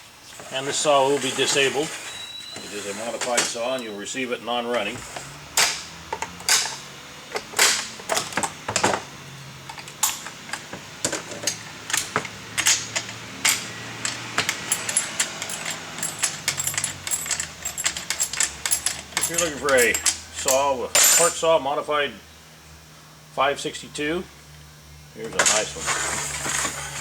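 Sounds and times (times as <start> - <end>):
metal parts clicking and clinking: 5.6 - 9.0, 9.7 - 21.5.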